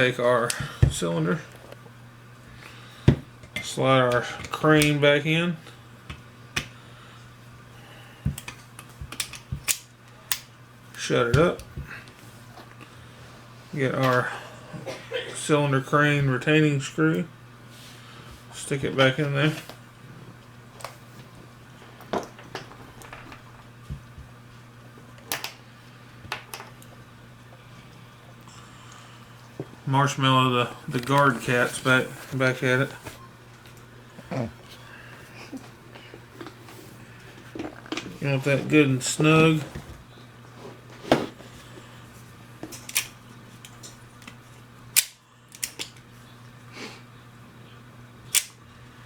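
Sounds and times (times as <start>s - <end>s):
steady low hum: 0.0s - 49.0s
metallic clicks of revolver parts: 45.0s - 46.0s, 48.3s - 48.6s.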